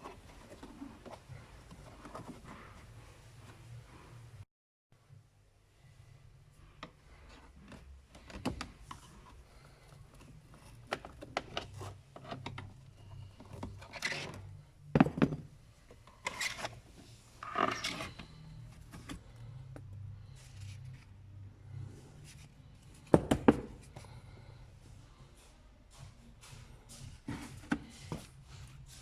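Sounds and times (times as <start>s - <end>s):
plastic parts rubbing and scraping: 7.2s - 14.6s, 16.0s - 19.5s.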